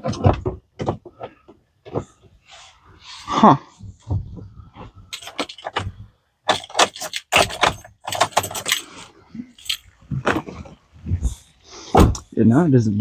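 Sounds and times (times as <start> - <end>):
keys jangling: 5.1 - 5.9, 6.5 - 10.6
ignition key clicks and rattles: 5.1 - 10.6.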